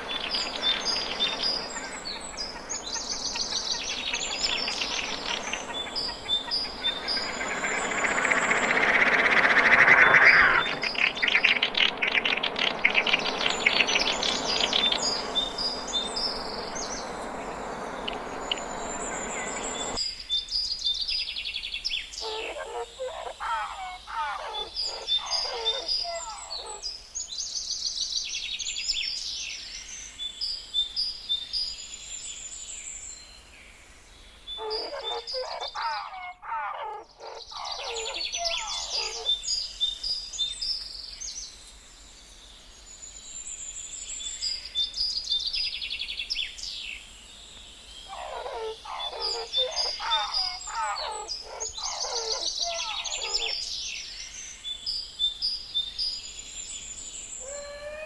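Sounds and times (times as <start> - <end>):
rapid twittering trills: 0.0 - 20.0, 34.4 - 40.6, 47.8 - 54.5.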